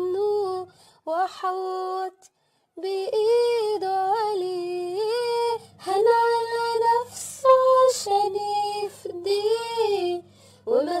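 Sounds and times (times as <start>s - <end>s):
woman singing a hymn: 0.0s - 11.0s.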